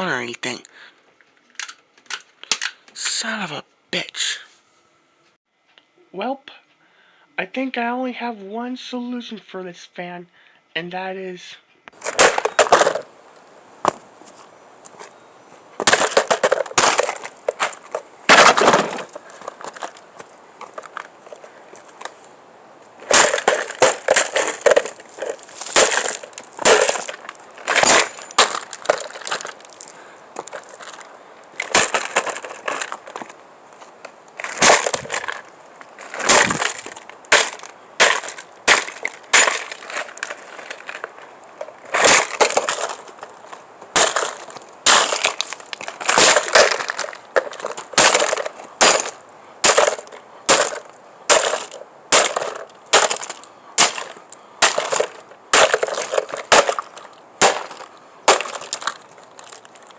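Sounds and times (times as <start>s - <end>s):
plastic cracking and crunching: 11.9s - 14.0s, 15.8s - 22.3s, 23.0s - 59.9s
hard blows smashing fan: 12.0s - 13.1s, 15.8s - 22.2s, 23.0s - 33.4s, 34.4s - 41.2s, 41.8s - 59.5s.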